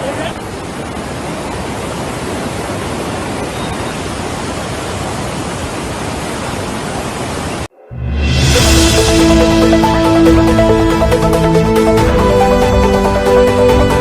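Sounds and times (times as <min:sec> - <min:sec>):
floodwater rushing: 0:00.0 - 0:07.7.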